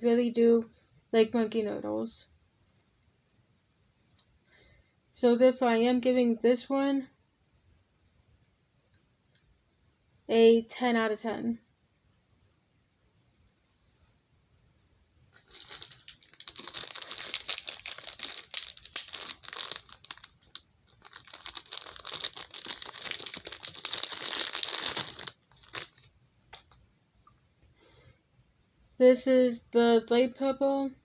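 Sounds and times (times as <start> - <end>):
plastic crinkling and rustling: 15.4 - 26.8.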